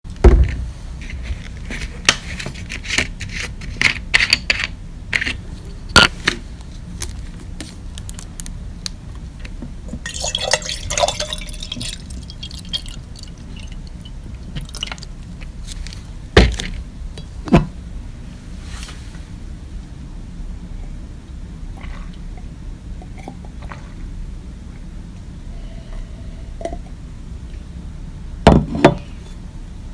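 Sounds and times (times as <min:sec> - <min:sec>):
steady low hum: 0:00.1 - 0:29.9
water poured into a glass: 0:10.0 - 0:15.3.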